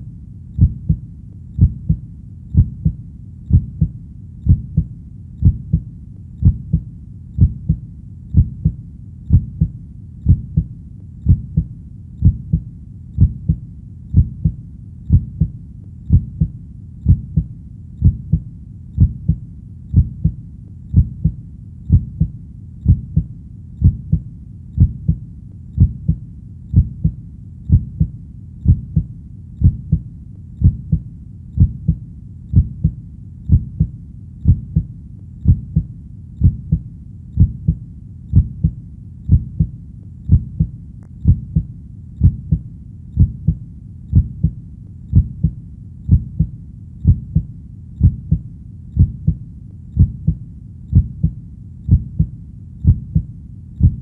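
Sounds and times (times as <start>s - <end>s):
heartbeat thumping: 0.6s - 25.2s, 25.8s - 54.0s.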